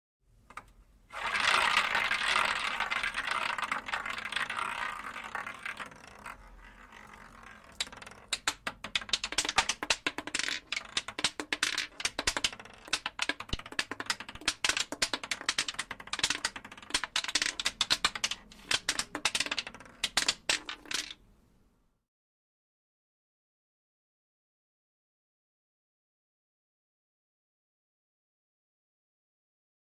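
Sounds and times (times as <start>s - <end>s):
roulette ball rolling: 0.5s - 21.3s.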